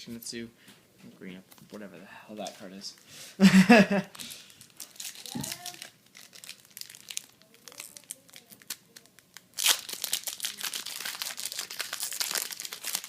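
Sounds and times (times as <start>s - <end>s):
foil wrapper rustling: 4.1s - 13.0s
wrapper crinkling: 4.1s - 13.0s
wrapper ripping open: 4.1s - 13.0s.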